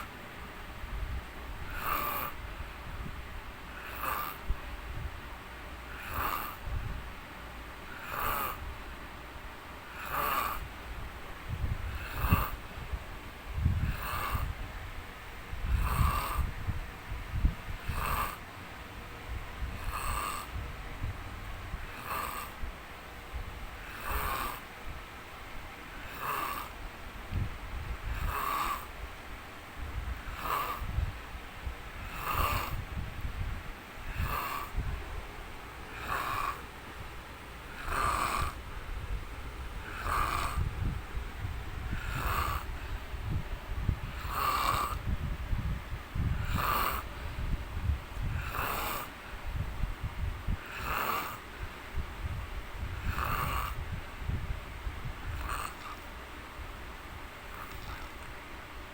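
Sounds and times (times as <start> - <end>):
man snoring: 1.6 - 2.6, 3.7 - 4.6, 5.9 - 6.8, 7.9 - 8.7, 9.8 - 10.7, 11.7 - 12.6, 13.6 - 14.6, 15.6 - 16.6, 17.4 - 18.4, 19.7 - 20.6, 21.8 - 22.6, 23.8 - 24.7, 25.9 - 26.8, 28.0 - 29.0, 30.2 - 31.1, 32.0 - 33.0, 34.0 - 34.9, 35.9 - 36.7, 37.6 - 38.9, 39.7 - 41.0, 41.8 - 43.0, 43.9 - 45.2, 46.2 - 47.1, 48.2 - 49.1, 50.5 - 51.5, 52.9 - 53.9, 55.2 - 56.0, 57.5 - 58.0.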